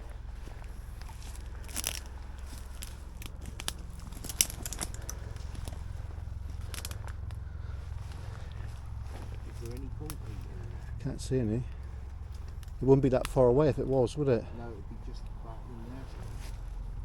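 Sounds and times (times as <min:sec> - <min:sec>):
dry leaves crunching underfoot: 0:00.0 - 0:11.0, 0:15.8 - 0:17.0
low steady drone: 0:00.0 - 0:17.0
twigs snapping: 0:00.4 - 0:11.0, 0:11.7 - 0:14.0.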